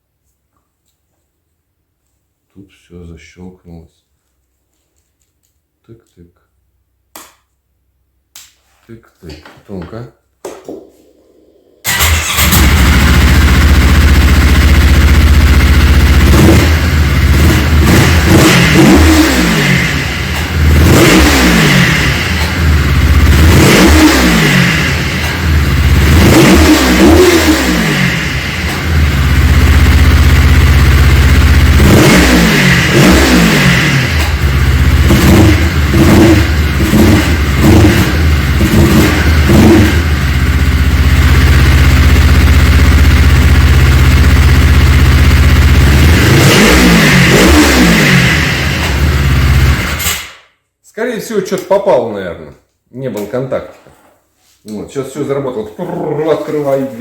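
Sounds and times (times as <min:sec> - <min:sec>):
snowmobile engine revving: 0:11.9 - 0:50.0.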